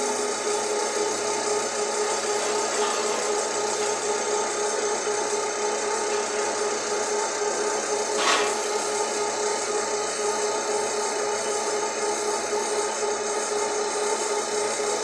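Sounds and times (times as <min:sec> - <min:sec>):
lathe cutting metal rim: 0:00.0 - 0:15.0
lathe machine whine: 0:00.0 - 0:15.0
loud scrape: 0:02.3 - 0:03.4, 0:08.2 - 0:08.8.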